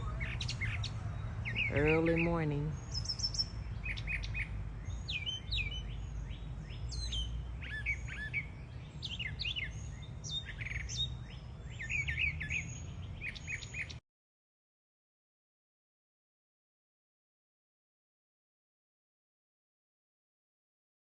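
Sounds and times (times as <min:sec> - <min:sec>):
songbirds singing and chirping: 0:00.0 - 0:14.0.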